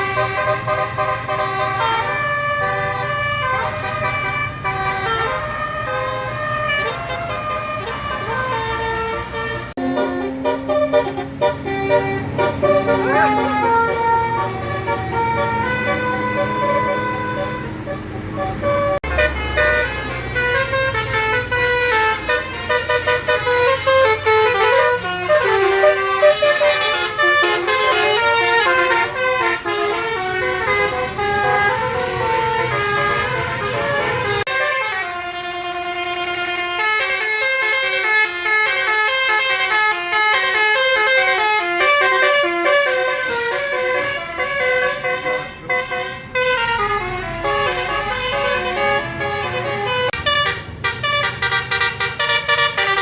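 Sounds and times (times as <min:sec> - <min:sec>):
low engine rumble: 0:00.0 - 0:36.6
musical bus horn melody: 0:00.0 - 0:53.0.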